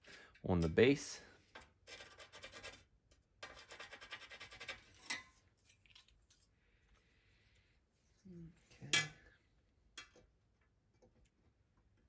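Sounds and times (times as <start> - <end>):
scratching on steel plate: 3.4 - 5.3.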